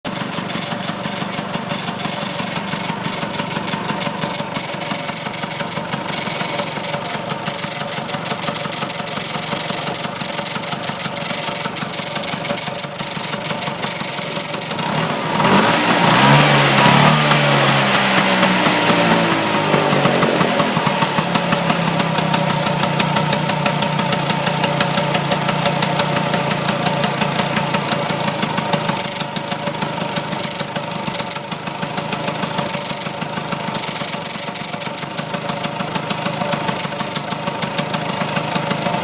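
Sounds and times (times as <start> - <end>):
scooter engine running: 0.0 - 39.0
metallic jingling: 0.1 - 14.8, 36.6 - 37.5
engine revving: 0.1 - 39.0.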